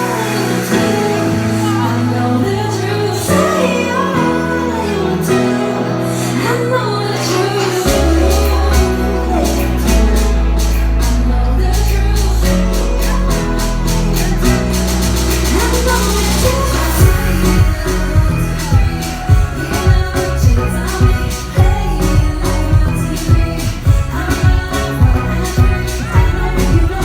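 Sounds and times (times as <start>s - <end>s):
sustained chords: 0.0s - 27.0s
woman singing: 0.0s - 27.0s
deep bass: 7.8s - 27.0s
steady drum beat: 11.8s - 27.0s.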